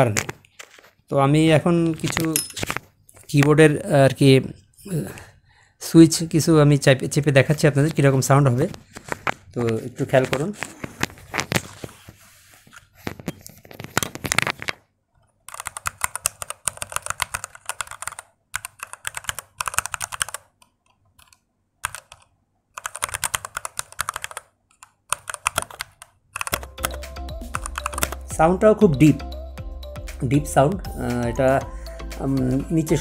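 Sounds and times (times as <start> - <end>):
mechanical keyboard typing: 15.5 - 28.3.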